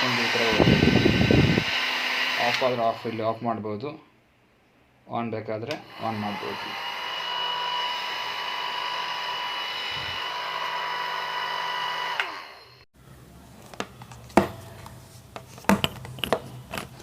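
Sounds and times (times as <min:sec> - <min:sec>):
hair dryer whirring: 0:00.0 - 0:03.4, 0:05.7 - 0:12.9.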